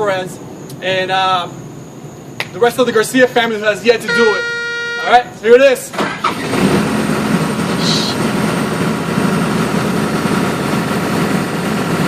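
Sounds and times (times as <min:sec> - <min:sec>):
excavator engine idling: 0:04.0 - 0:12.0.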